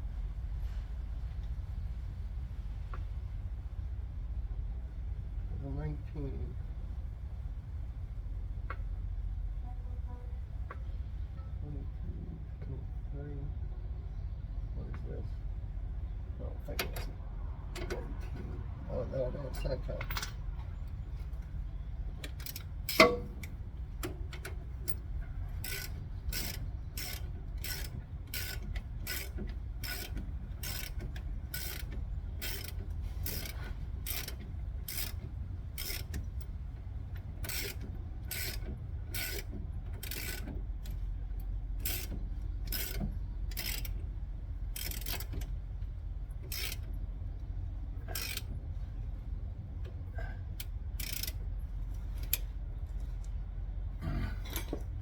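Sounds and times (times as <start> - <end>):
ratchet wrench clicking: 22.2 - 41.0, 41.8 - 45.6, 46.4 - 47.0, 48.0 - 48.6, 50.6 - 52.5.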